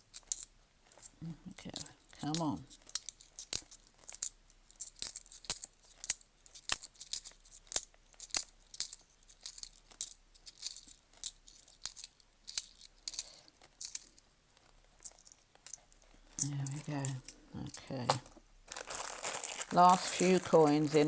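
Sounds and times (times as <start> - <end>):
coins clicking together: 1.8 - 14.1.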